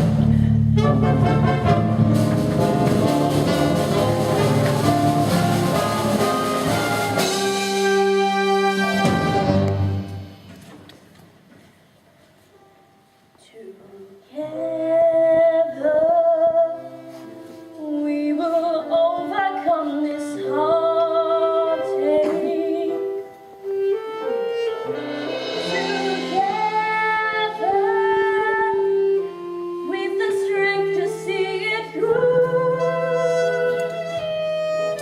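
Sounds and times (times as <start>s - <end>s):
person singing with vibrato: 23.8s - 34.2s.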